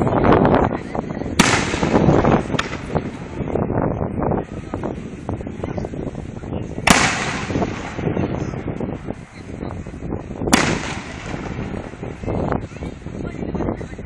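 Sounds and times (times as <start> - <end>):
firework pops and crackles: 1.4 - 3.5, 6.8 - 9.3, 10.4 - 12.5
aerial firework shell burst: 6.9 - 8.6, 10.5 - 12.2.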